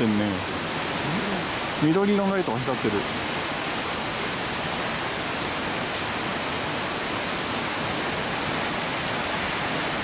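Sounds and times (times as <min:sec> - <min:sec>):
waterfall roaring: 0:00.0 - 0:10.0.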